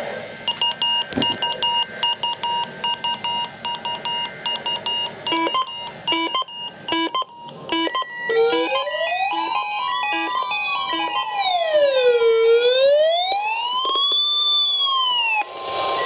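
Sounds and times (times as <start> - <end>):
rapid high-pitched beeping: 0.7 - 12.8
rising siren-like tone: 7.9 - 16.0.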